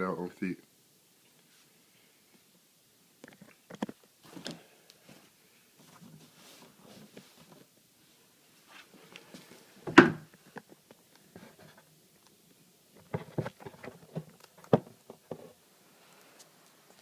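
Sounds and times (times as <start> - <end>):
objects thumping and knocking: 9.8 - 10.3, 13.0 - 15.6.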